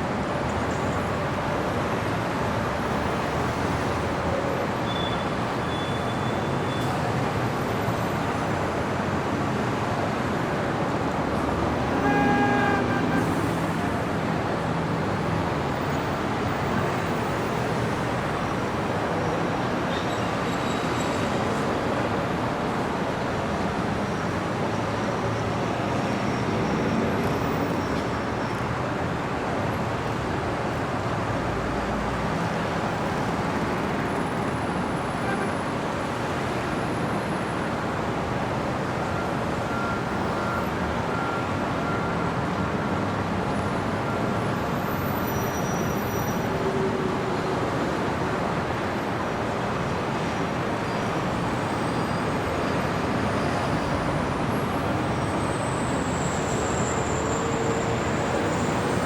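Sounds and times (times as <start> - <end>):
passing cars: 5.4 - 59.0
car horn: 11.8 - 13.8.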